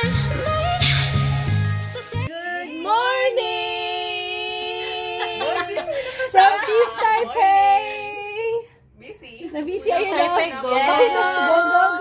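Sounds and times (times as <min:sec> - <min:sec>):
music with bass line: 0:00.0 - 0:02.3.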